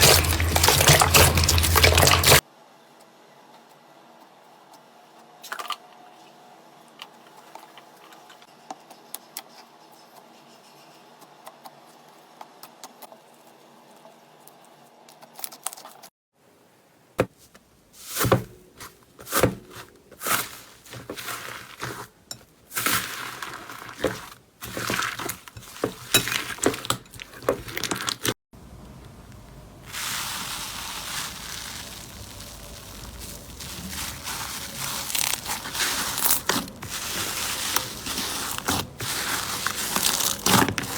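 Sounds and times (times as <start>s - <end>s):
slime squishing and crackling: 0.0s - 2.4s, 22.8s - 28.3s, 29.9s - 40.9s.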